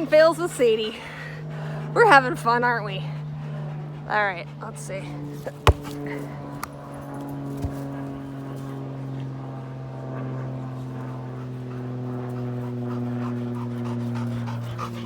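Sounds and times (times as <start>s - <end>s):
engine drone: 0.0s - 15.0s
dog panting: 1.5s - 6.2s, 10.1s - 15.0s.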